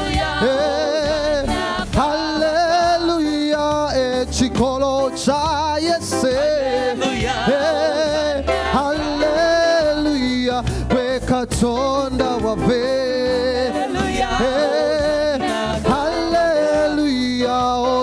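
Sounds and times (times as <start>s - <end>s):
person singing: 0.0s - 4.7s, 5.9s - 18.0s
band accompaniment with bass: 0.0s - 18.0s.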